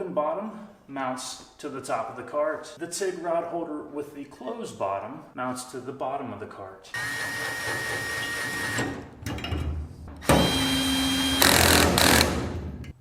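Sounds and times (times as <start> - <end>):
cordless driver whining: 7.0 - 9.0, 10.2 - 12.4.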